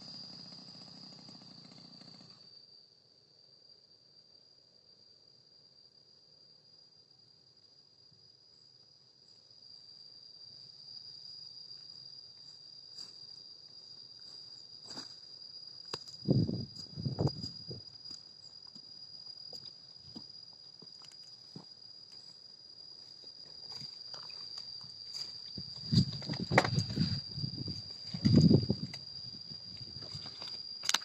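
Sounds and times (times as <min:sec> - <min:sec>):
insects trilling: 0:00.0 - 0:31.0
heavy thumps: 0:25.9 - 0:27.2.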